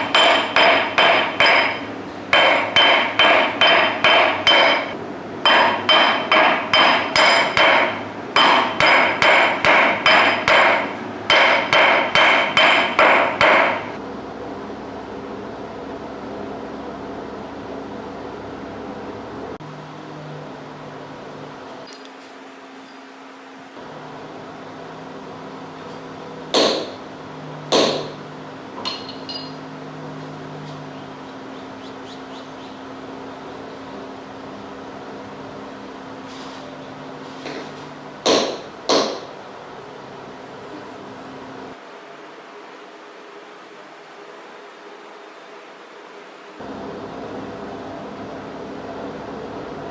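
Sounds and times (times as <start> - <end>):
steady low hum: 0.0 - 21.6
hammer striking metal coin: 28.8 - 29.6
loud knocks: 38.3 - 39.3.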